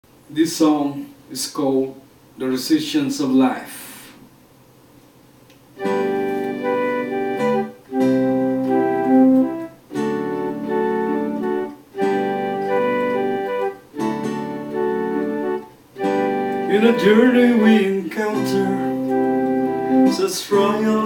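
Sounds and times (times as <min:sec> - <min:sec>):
organ-like keyboard chords: 0:05.8 - 0:21.0.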